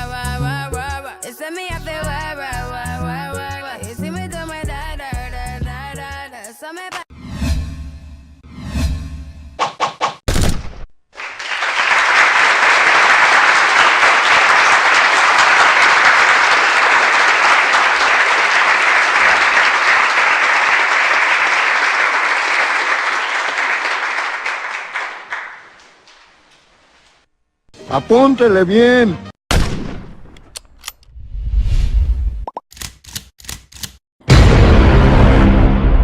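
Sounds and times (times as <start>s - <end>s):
crowd applause: 11.2s - 26.2s.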